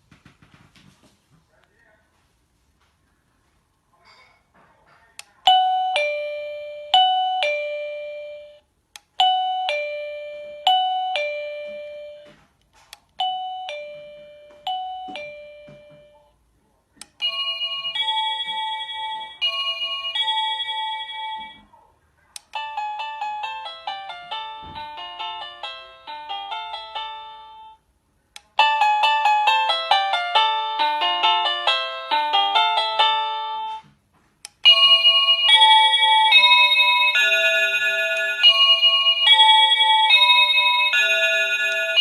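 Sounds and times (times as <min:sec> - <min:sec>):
doorbell chime ding-dong: 0:05.5 - 0:08.6, 0:09.2 - 0:12.4, 0:13.2 - 0:16.3, 0:17.2 - 0:21.7, 0:34.7 - 0:42.0.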